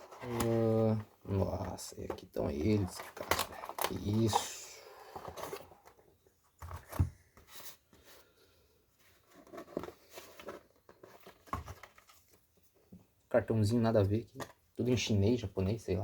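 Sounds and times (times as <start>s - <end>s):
packaging rustling and tapping: 0.0s - 4.6s.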